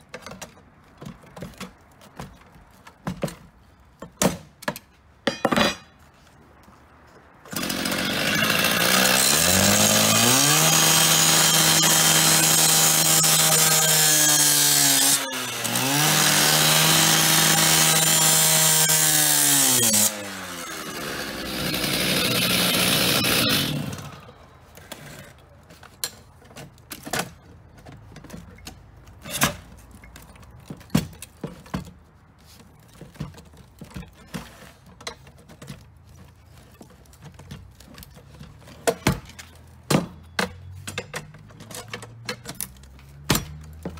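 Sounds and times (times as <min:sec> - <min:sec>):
knocks and clanks: 0:00.1 - 0:06.0
power cutting tool cutting metal: 0:07.5 - 0:24.2.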